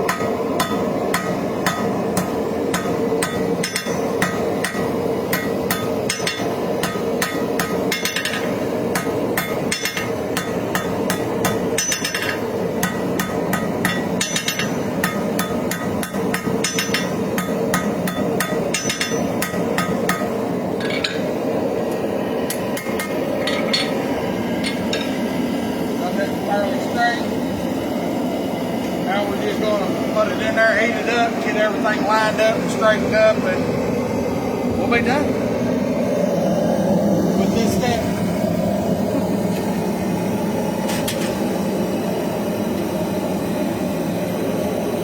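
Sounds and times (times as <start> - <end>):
hammer striking steel on anvil: 0.0 - 21.4, 22.5 - 25.2.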